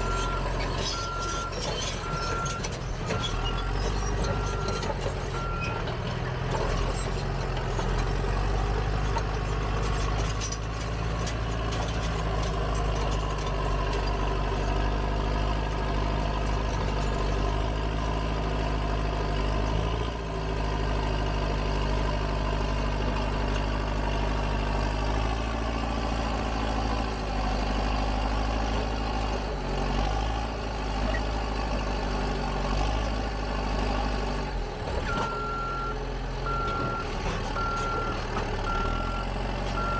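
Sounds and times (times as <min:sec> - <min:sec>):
heavy diesel engine running: 0:00.0 - 0:39.9.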